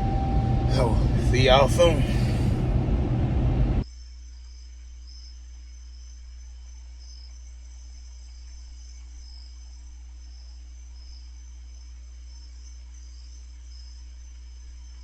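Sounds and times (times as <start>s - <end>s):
low electrical hum: 0.0s - 15.0s
crickets chirping: 3.8s - 15.0s.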